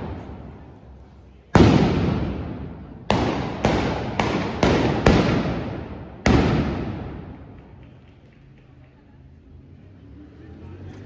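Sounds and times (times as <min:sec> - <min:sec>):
blunderbuss blasts: 0:01.5 - 0:07.5.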